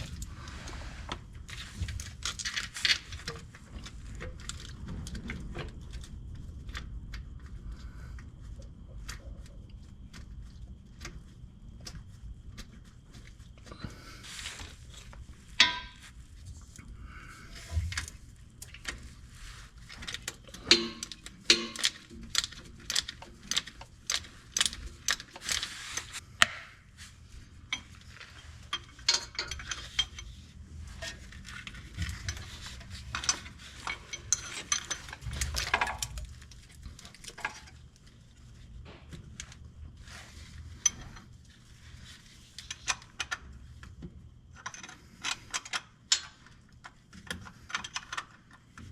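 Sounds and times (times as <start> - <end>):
metal tools clinking and scraping: 20.0 - 23.7, 27.7 - 36.3.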